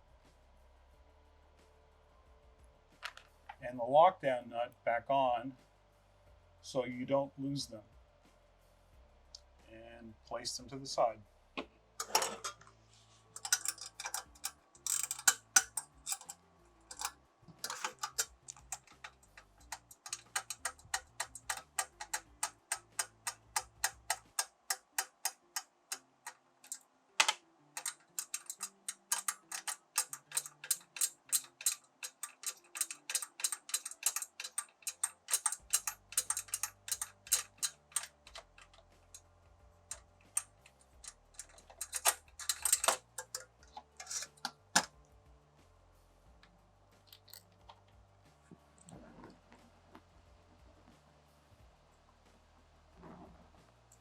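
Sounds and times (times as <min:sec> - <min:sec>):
socket ratchet clicking: 0:12.0 - 0:12.7, 0:13.4 - 0:39.3, 0:39.9 - 0:44.9.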